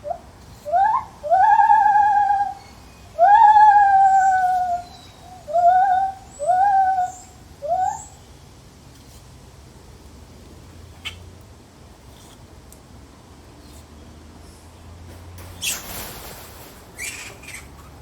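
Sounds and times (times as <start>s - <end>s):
gibbon hooting calls: 0.0s - 8.1s.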